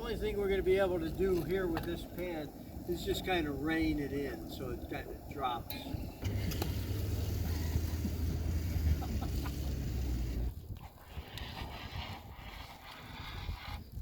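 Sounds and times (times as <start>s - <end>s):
extinguisher rushing: 6.2s - 10.5s.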